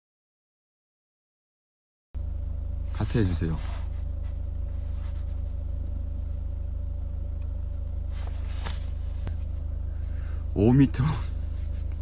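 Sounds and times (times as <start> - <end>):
low electrical hum: 2.2 - 12.0
brief rustles: 8.1 - 9.5.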